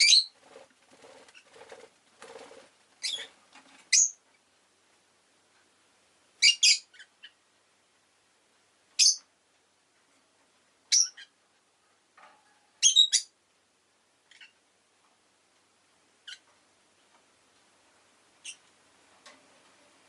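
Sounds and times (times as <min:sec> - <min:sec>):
bird chirping: 0:00.0 - 0:00.5, 0:03.0 - 0:04.2, 0:06.4 - 0:07.4, 0:09.0 - 0:09.3, 0:10.9 - 0:11.4, 0:12.8 - 0:13.4, 0:14.2 - 0:14.6, 0:16.2 - 0:16.5, 0:18.4 - 0:18.7.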